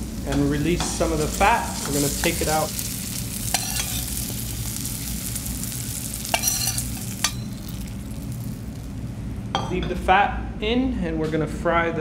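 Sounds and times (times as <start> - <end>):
meat sizzling in frying pan: 0.0 - 9.2.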